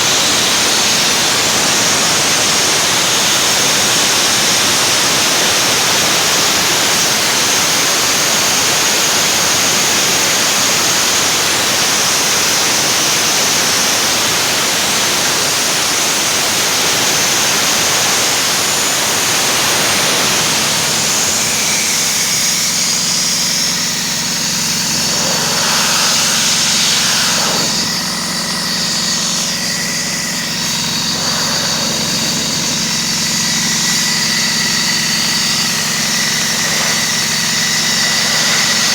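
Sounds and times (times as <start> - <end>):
compressor running with whine: 0.0 - 38.9
loud even hiss: 16.0 - 38.9.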